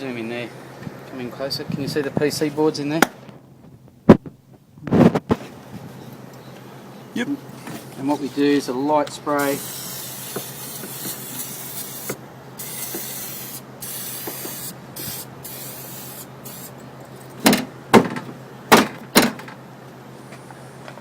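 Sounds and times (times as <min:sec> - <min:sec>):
spray can hissing: 0:09.4 - 0:16.8.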